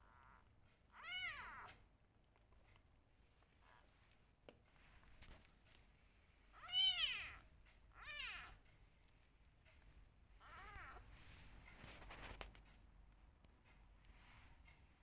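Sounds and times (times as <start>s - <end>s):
kitten meowing: 0.0s - 1.8s, 6.6s - 8.6s, 10.4s - 11.0s.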